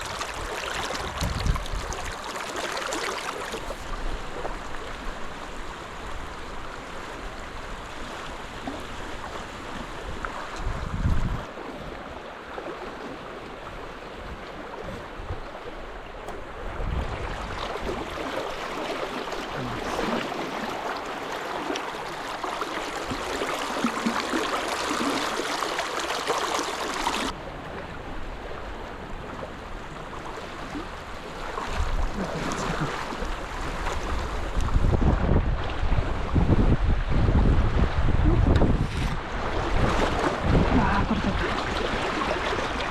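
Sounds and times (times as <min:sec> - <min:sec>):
wind buffeting microphone: 0:00.0 - 0:02.2, 0:09.8 - 0:11.5, 0:16.4 - 0:18.3, 0:33.4 - 0:42.9
river water rushing: 0:00.0 - 0:10.6, 0:11.5 - 0:34.9, 0:39.1 - 0:42.9.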